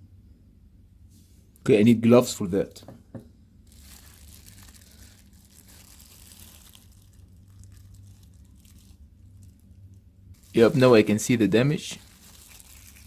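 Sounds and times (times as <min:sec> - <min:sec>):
steady low hum: 0:00.0 - 0:13.0
faint crinkling and rustling: 0:03.6 - 0:13.0.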